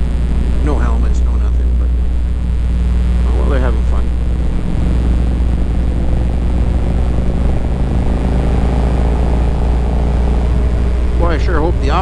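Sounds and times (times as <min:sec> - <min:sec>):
motorcycle engine drone: 0:00.0 - 0:12.0
road and wind rush: 0:04.0 - 0:12.0.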